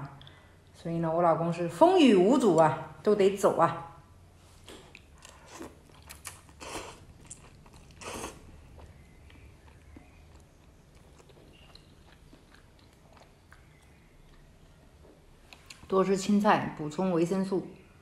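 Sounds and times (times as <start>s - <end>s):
faint chewing: 4.6s - 15.9s.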